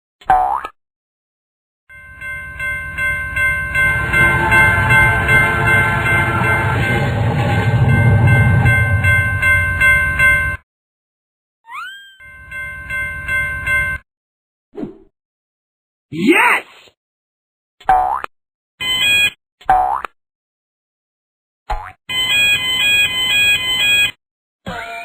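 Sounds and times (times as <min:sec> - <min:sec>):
railroad crossing bell ringing: 0:01.9 - 0:10.6, 0:12.2 - 0:14.0
train rumble: 0:02.4 - 0:10.6.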